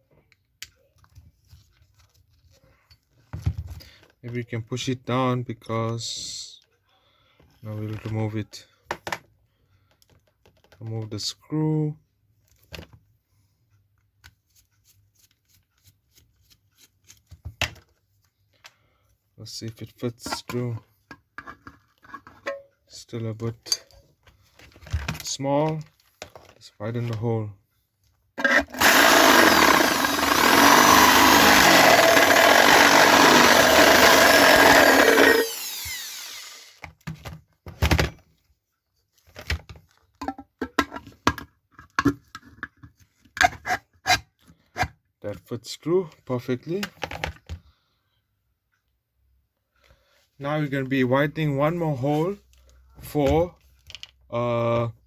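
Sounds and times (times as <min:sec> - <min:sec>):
power drill whining: 0:28.4 - 0:36.8.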